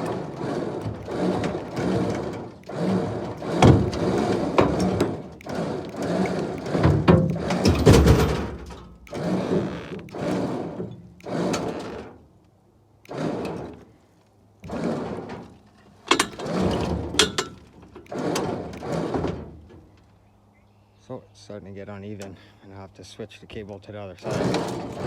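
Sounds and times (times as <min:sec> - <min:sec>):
sharp metal clicks: 0:00.0 - 0:11.8, 0:15.8 - 0:19.2
winch grinding rasp: 0:00.0 - 0:12.2, 0:13.0 - 0:13.9, 0:14.6 - 0:19.7, 0:24.2 - 0:25.0.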